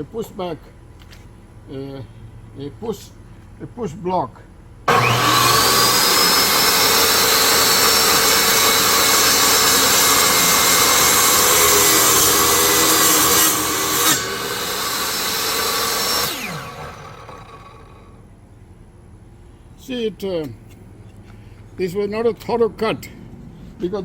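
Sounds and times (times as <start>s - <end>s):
saw blade ripping through wood: 4.9s - 18.0s
table saw motor whine: 4.9s - 18.2s.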